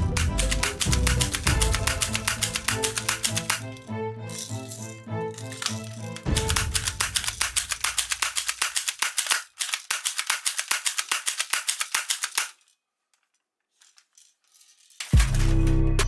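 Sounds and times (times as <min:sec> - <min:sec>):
rapid clicking rattle: 0:00.0 - 0:04.5, 0:05.3 - 0:12.7
music with heavy bass: 0:15.2 - 0:16.0.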